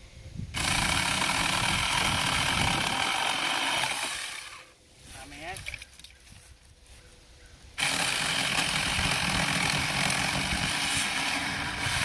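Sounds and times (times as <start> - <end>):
electric chainsaw cutting wood: 0.6 - 4.7, 7.8 - 12.0.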